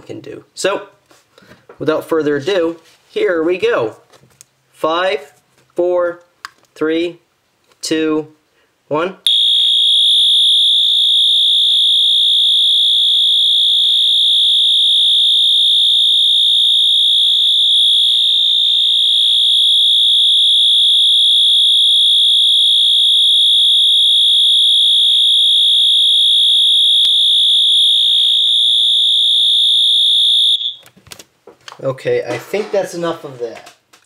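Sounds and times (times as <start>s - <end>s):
fire alarm horn tone: 9.3s - 30.8s.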